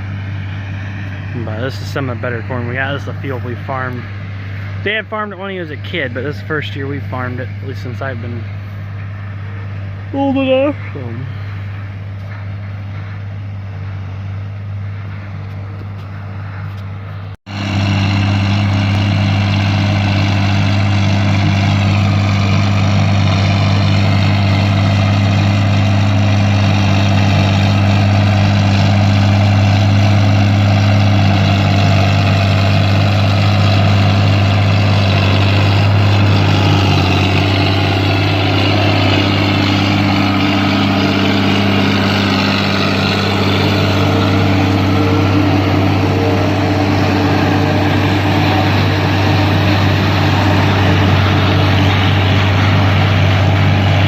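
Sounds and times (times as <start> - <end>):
tractor diesel engine drone: 0.0 - 54.0
forage harvester chopping corn: 17.5 - 54.0.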